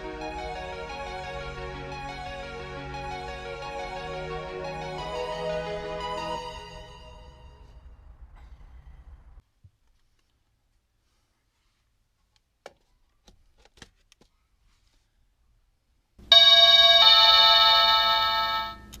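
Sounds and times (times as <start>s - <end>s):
doorbell ding-dong chime: 16.3s - 18.9s.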